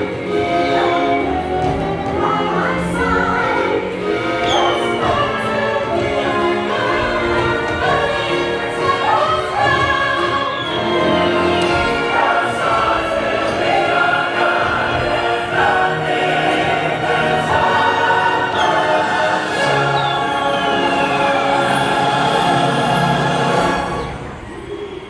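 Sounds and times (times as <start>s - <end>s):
orchestral music with choir: 0.0s - 25.0s
falling whistle-like glide: 10.2s - 11.6s.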